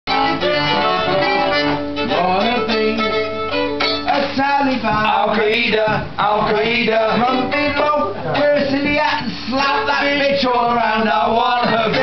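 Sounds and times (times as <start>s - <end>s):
fiddle playing: 0.1s - 4.7s
guitar accompaniment: 0.1s - 12.0s.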